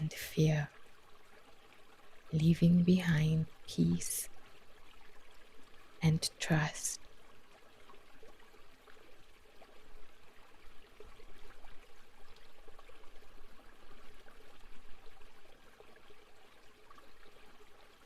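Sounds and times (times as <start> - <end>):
water running and trickling: 0.0 - 18.0
small water splashes: 7.0 - 18.0.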